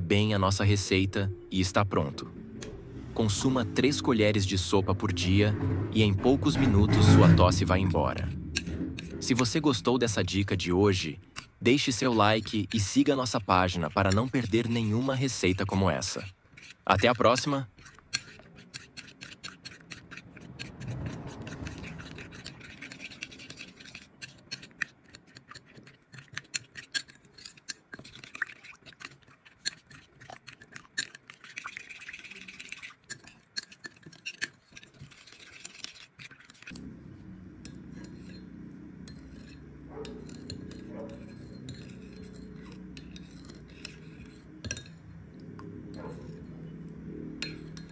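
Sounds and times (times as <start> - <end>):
low steady hum: 0.0 - 16.3, 36.7 - 47.9
utensil clinking on dishware: 37.7 - 45.0.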